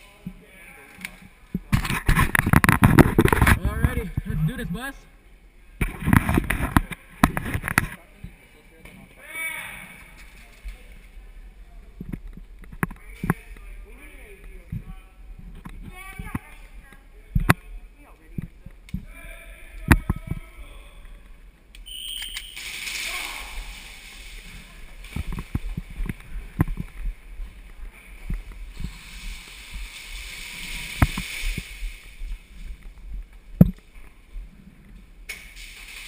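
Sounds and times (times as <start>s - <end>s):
rustling movement: 22.4s - 36.0s.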